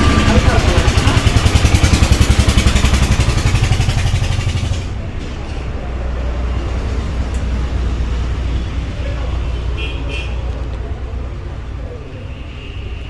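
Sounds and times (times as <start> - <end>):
motorcycle engine running: 0.0 - 5.0
low traffic rumble: 0.0 - 13.0.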